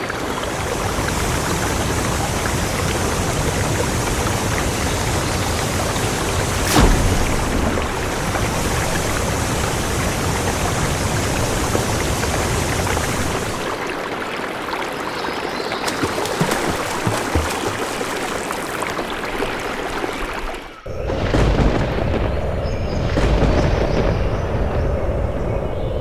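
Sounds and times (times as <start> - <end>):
heavy rain: 0.0 - 13.8, 20.9 - 26.0
thunder: 6.1 - 13.5, 20.9 - 26.0
deep low rumble: 6.4 - 9.8.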